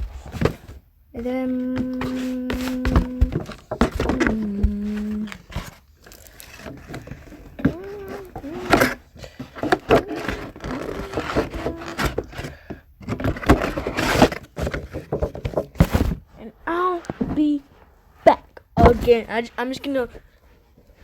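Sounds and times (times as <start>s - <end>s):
toy packaging being handled: 0.0s - 17.4s.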